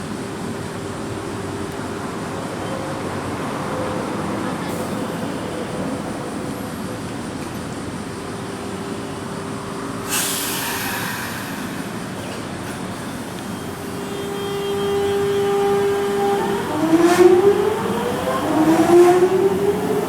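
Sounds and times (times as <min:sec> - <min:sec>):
air hiss: 0:10.0 - 0:16.4
electric train running: 0:10.8 - 0:20.0.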